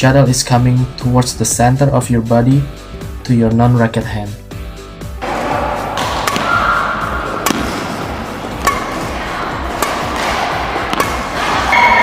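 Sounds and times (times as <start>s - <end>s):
hall noise: 5.2s - 12.0s
racket hitting shuttlecock: 5.2s - 12.0s.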